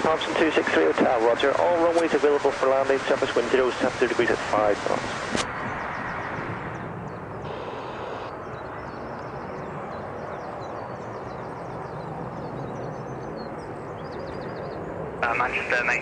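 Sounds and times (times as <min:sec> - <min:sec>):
jet airliner rumble overhead: 0:00.0 - 0:16.0
small birds chirping: 0:05.1 - 0:16.0.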